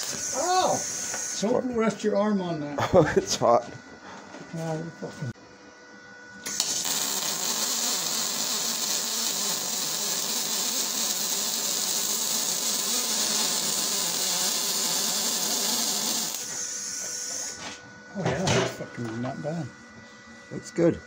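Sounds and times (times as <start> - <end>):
welding arc crackling hiss: 0.0 - 1.8, 6.4 - 17.6.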